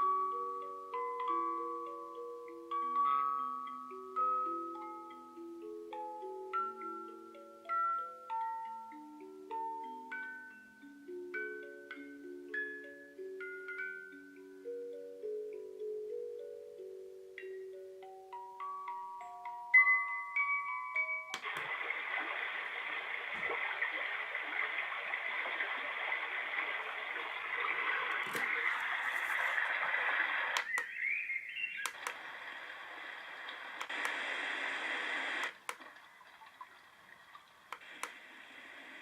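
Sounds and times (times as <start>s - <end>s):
white noise machine hiss: 0.0s - 39.0s
sharp clicks: 30.5s - 31.1s, 31.8s - 32.4s, 33.4s - 34.5s, 35.2s - 35.9s, 37.7s - 38.2s.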